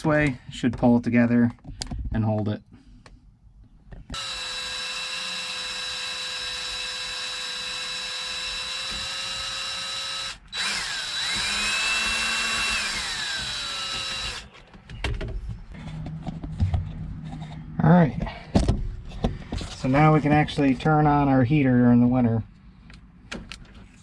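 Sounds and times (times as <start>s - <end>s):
power drill driving a screw: 4.1s - 14.5s.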